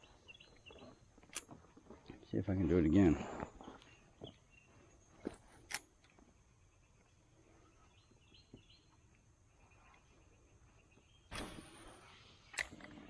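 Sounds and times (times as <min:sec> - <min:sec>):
faint bird chirps: 0:00.0 - 0:01.1, 0:06.3 - 0:12.6.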